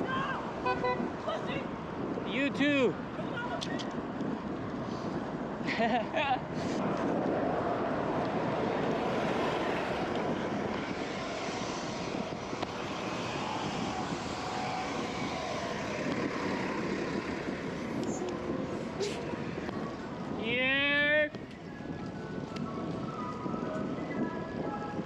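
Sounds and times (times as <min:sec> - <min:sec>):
street traffic: 0:00.0 - 0:25.0
wind roar: 0:00.0 - 0:25.0.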